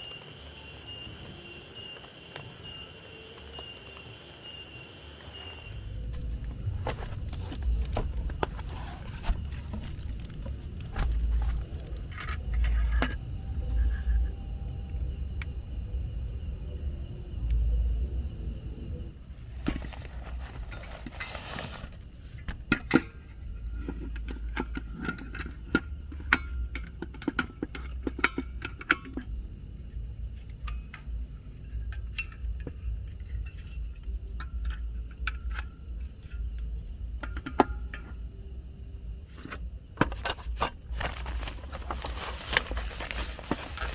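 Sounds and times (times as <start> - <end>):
rustling: 5.4 - 13.0, 19.4 - 22.5, 39.3 - 43.9.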